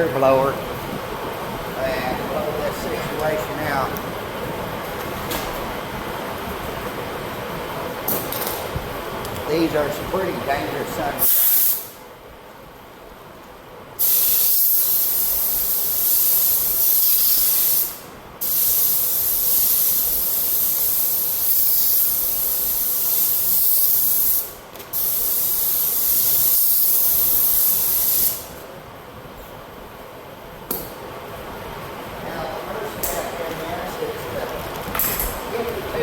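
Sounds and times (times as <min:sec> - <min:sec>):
air blower hissing: 0:08.8 - 0:12.1, 0:14.0 - 0:28.8.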